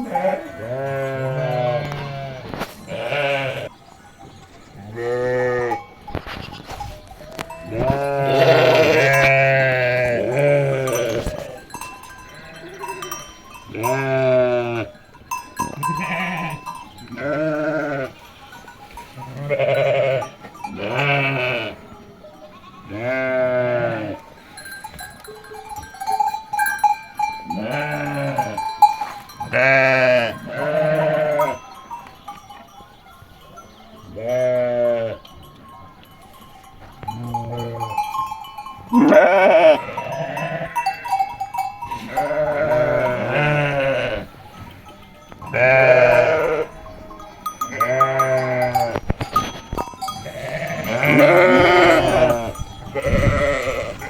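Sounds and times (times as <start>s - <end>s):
sheep bleating: 0.0s - 3.7s, 4.8s - 6.7s, 7.3s - 11.6s, 13.7s - 14.9s, 15.7s - 18.2s, 19.3s - 21.8s, 22.5s - 24.2s, 27.4s - 28.7s, 29.5s - 31.6s, 34.2s - 35.2s, 38.9s - 41.1s, 42.0s - 44.3s, 45.5s - 46.7s, 47.7s - 49.0s, 50.2s - 54.0s
livestock bell ringing: 0.0s - 54.0s.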